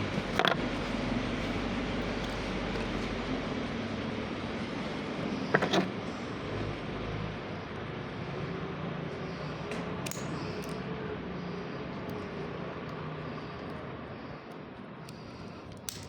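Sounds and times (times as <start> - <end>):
steady low hum: 0.0 - 16.0
small parts clicking and tapping: 0.1 - 3.1, 5.5 - 5.9, 9.6 - 10.9, 12.0 - 16.0.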